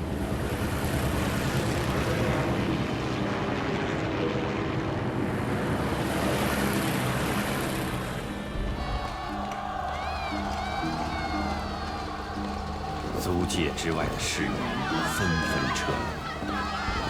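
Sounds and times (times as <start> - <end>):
propeller aircraft engines droning: 0.0 - 17.0.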